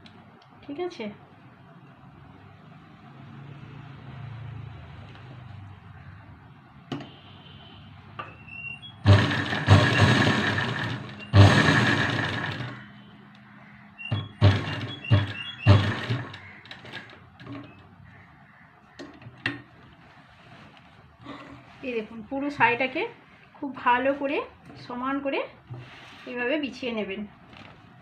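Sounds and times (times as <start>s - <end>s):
fabric swishing rustles: 20.0s - 22.2s, 25.8s - 26.6s.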